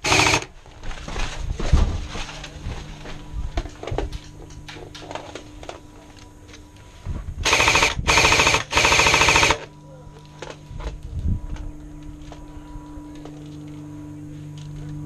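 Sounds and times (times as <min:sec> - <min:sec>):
airsoft gun full-auto bursts: 0:00.0 - 0:00.5, 0:07.4 - 0:09.7
scattered shots and clicks: 0:00.0 - 0:00.5, 0:07.4 - 0:09.7.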